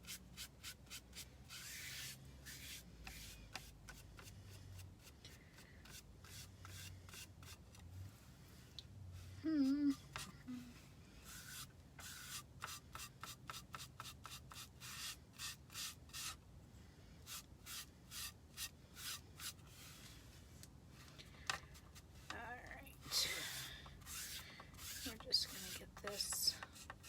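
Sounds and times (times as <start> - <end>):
paintbrush scratchy strokes: 0.0 - 16.4, 17.2 - 21.0, 23.4 - 27.0
person humming: 9.4 - 10.8.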